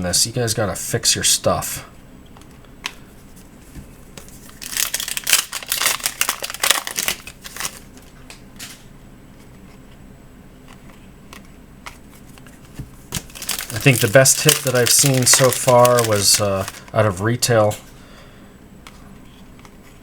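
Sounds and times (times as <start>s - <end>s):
wrapper crinkling and tearing: 4.3s - 8.8s, 13.0s - 17.0s
cards clicking: 13.1s - 17.0s.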